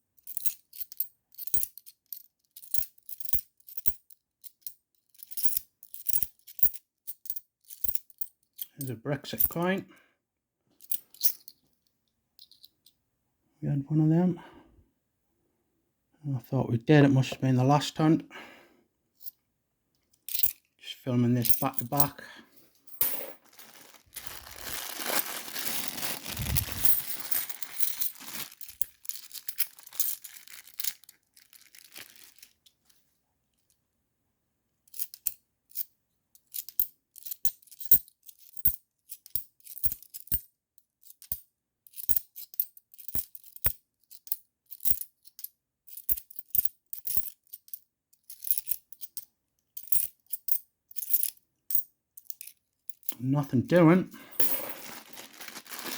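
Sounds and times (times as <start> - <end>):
coins clicking as set down: 20.3 - 20.6, 22.9 - 23.4, 25.8 - 30.2, 36.5 - 40.5, 41.1 - 49.2, 54.3 - 55.1
coins tipped out with thud: 22.9 - 23.4, 26.4 - 28.8, 54.3 - 55.0
plastic bag tearing: 23.4 - 32.6, 54.5 - 55.9.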